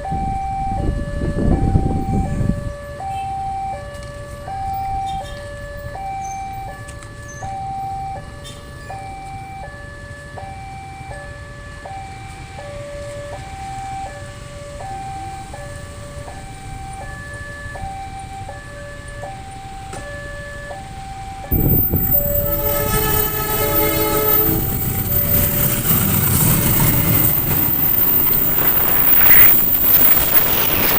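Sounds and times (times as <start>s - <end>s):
level-crossing two-note alarm: 0.0s - 30.9s
low rumble of traffic: 0.0s - 30.9s
train rushing past: 21.5s - 30.9s.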